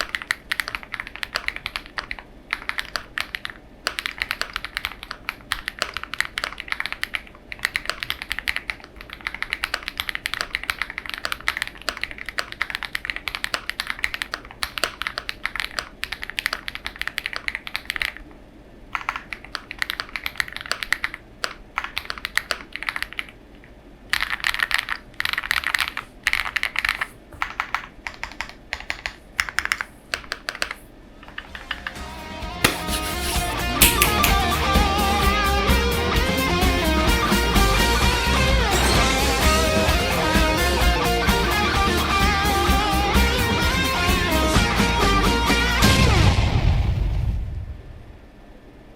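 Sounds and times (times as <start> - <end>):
mechanical keyboard typing: 24.1 - 30.7.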